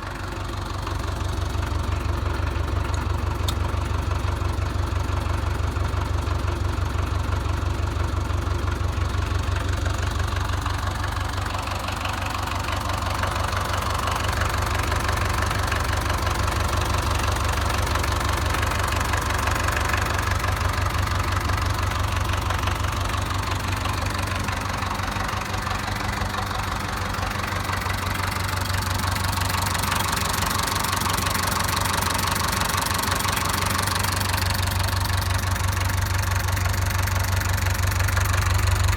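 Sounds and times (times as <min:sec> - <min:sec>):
diesel tractor engine idling: 0:00.0 - 0:38.9.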